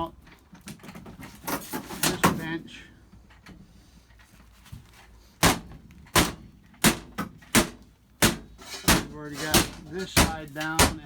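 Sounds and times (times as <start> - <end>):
sharp blows on wooden bench: 5.4 - 11.0.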